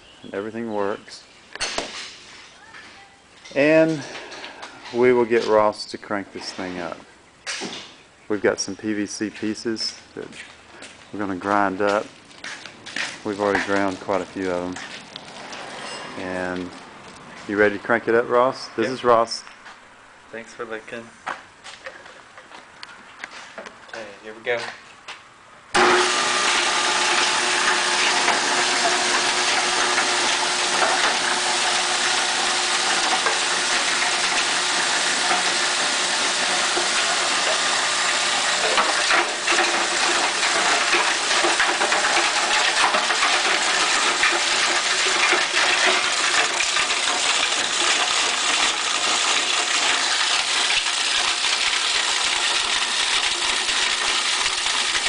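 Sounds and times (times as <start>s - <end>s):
plastic clattering in grinder rotor: 25.8s - 52.1s
grinder motor hum: 25.8s - 52.6s.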